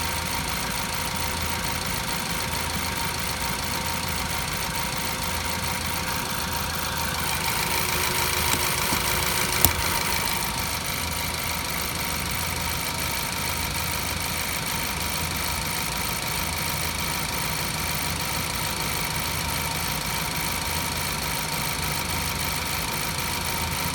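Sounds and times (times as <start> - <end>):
car engine idling: 2.4 - 11.0
sharp click: 7.0 - 10.6.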